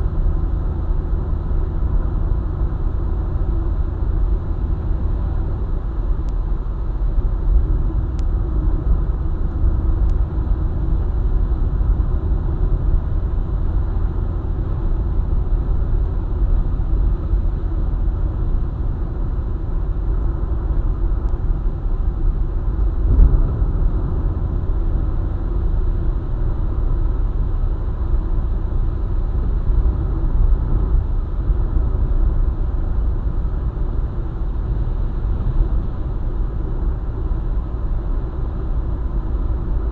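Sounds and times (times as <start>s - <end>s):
car road rumble: 0.0s - 39.9s
brief thump: 23.1s - 24.1s.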